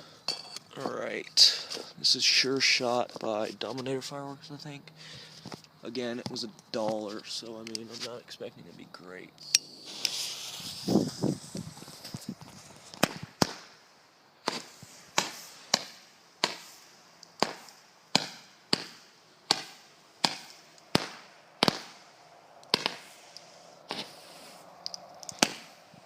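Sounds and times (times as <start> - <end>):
firework cake popping: 9.7 - 13.8, 14.4 - 22.1, 22.7 - 23.2, 25.3 - 25.8.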